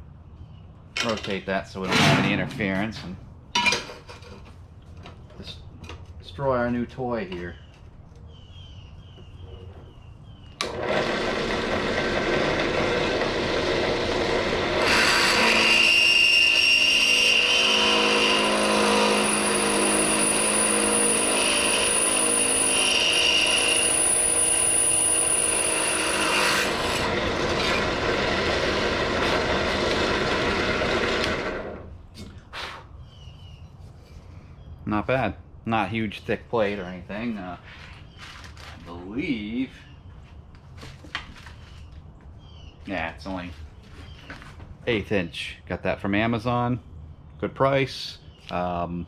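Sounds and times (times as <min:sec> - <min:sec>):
drill press motor running: 0:10.6 - 0:31.9
drill bit squealing in steel: 0:14.9 - 0:26.8.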